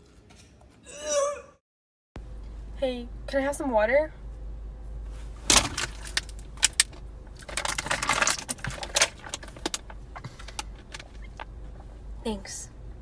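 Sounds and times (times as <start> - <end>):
small hard objects clicking and rattling: 5.5 - 11.5.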